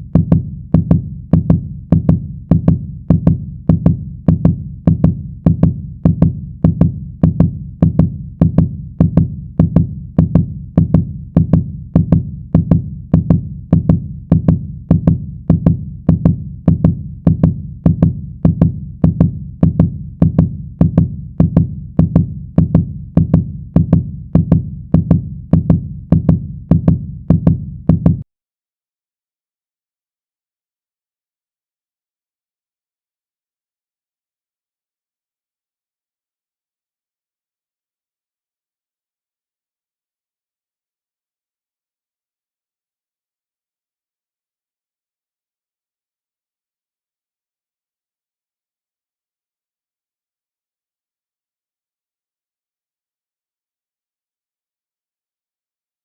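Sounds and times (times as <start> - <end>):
fast heartbeat: 0.0 - 28.2.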